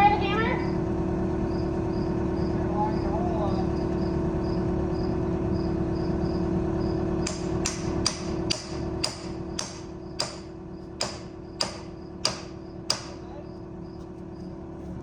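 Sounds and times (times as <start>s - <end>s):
steady low hum: 0.0s - 15.0s
faint insect chirping: 1.4s - 7.1s, 9.9s - 14.6s
hammer striking: 7.2s - 13.2s.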